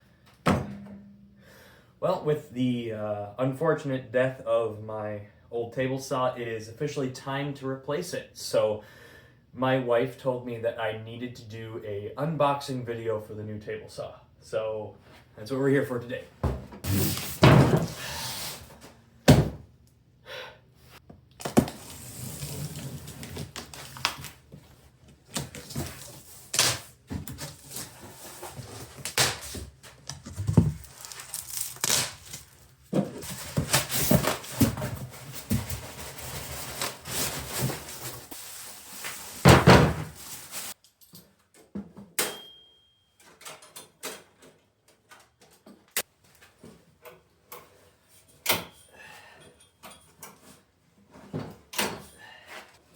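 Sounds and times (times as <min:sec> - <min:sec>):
cardboard box thuds and scraping: 0:16.4 - 0:18.1.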